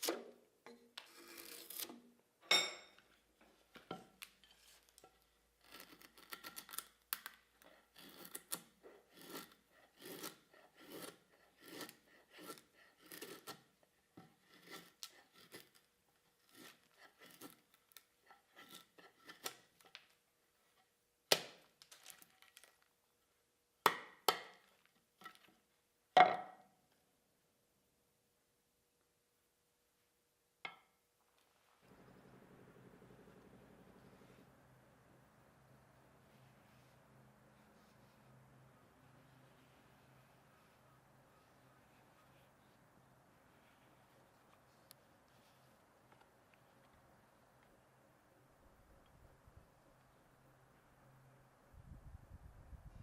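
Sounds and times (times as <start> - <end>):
hand scraping strokes: 36.0 - 45.9.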